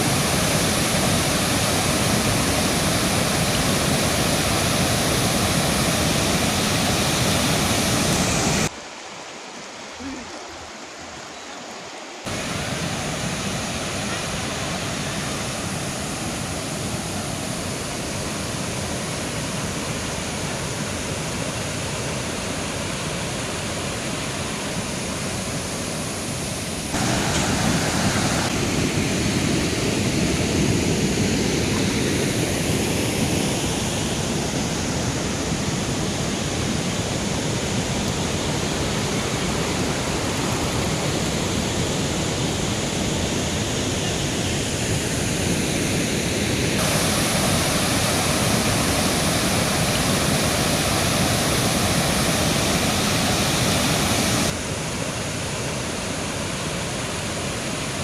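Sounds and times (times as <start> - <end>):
mountain river rushing: 0.0 - 58.0.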